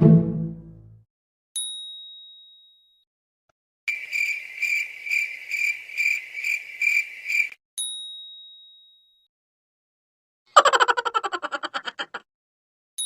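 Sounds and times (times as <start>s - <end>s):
crickets chirping: 3.9s - 7.6s.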